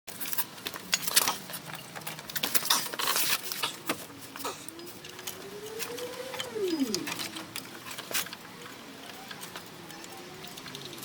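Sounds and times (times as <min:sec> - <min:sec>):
thin rising squeak: 0:04.7 - 0:07.5.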